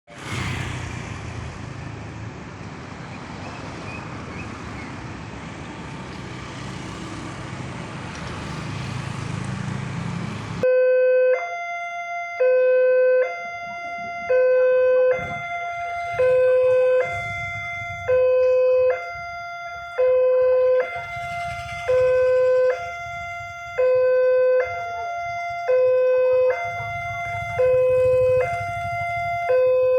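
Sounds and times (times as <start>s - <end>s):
road traffic noise: 0.1s - 29.9s
two-tone level-crossing warning siren: 10.6s - 29.9s.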